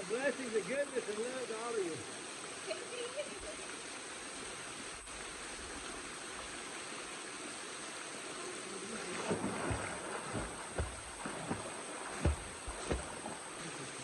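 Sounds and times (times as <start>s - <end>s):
low thumps: 9.3s - 13.4s.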